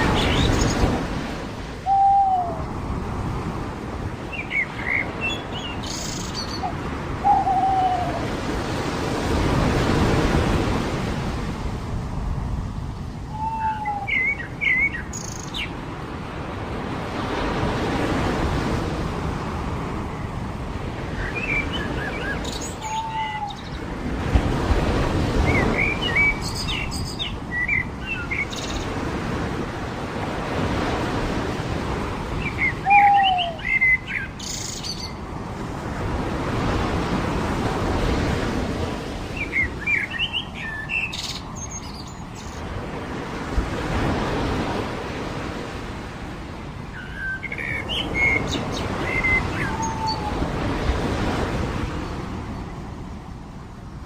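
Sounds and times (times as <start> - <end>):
ocean surf rolling in: 0.0 - 54.0
bird low down-slurred call: 1.8 - 2.7, 6.4 - 8.3, 13.3 - 14.8, 22.6 - 23.7, 32.6 - 34.2, 49.0 - 50.5.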